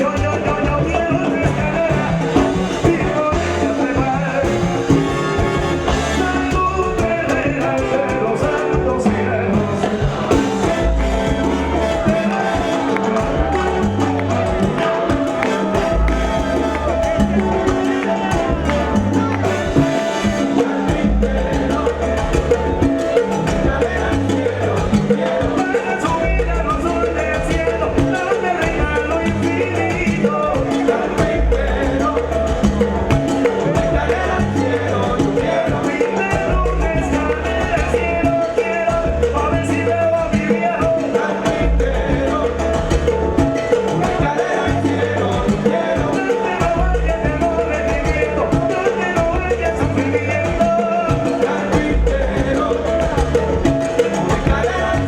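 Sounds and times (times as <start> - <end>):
percussion beat: 0.0 - 55.0
salsa band playing: 0.0 - 55.0
person singing: 43.9 - 55.0.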